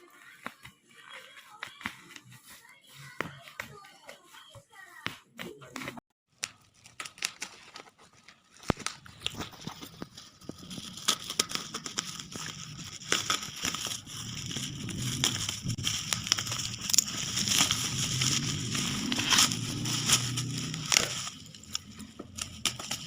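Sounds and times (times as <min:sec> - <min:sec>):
crackling rustling handling noise: 0:06.3 - 0:23.0.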